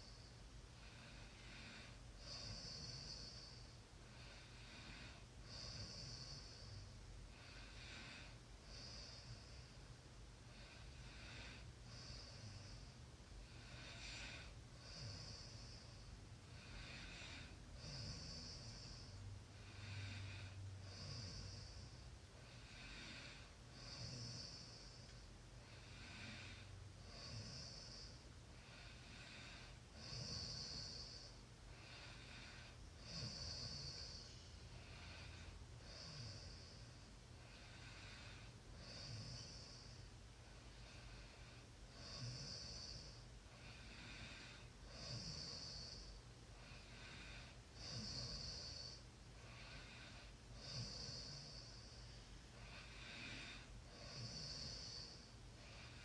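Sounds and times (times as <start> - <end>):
person snoring faintly: 0.0 - 9.8, 10.5 - 56.0
steady low hum: 0.0 - 56.0.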